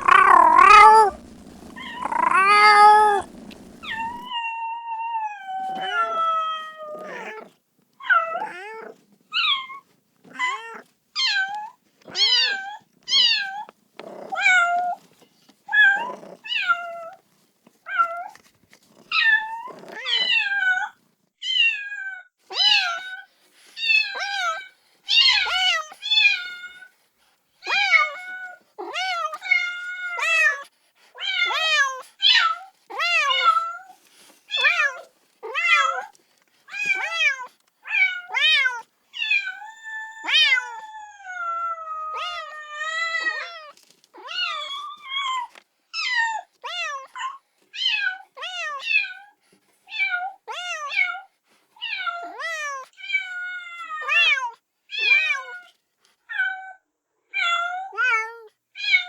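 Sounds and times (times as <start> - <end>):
kitten meowing: 0.0 - 4.3.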